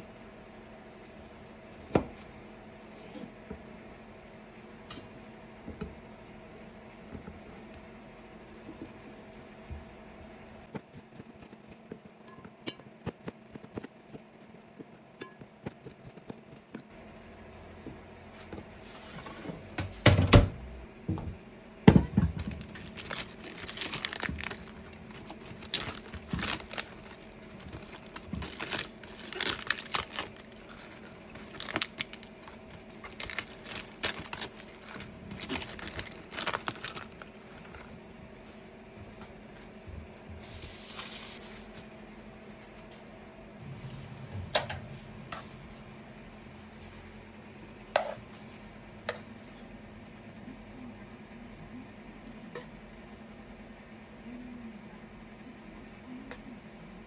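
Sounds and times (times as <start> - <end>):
steady low hum: 0.0 - 57.0
crinkling and tearing rustles: 22.6 - 37.9.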